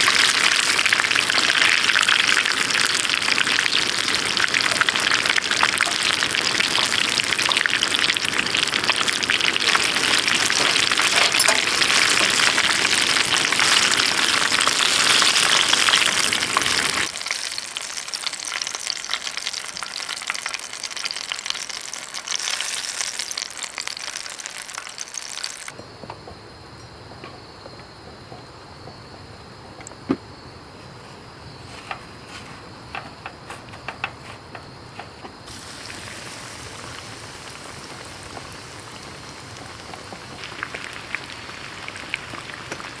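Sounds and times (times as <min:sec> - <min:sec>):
food sizzling in a pan: 0:00.0 - 0:25.8, 0:35.5 - 0:43.0.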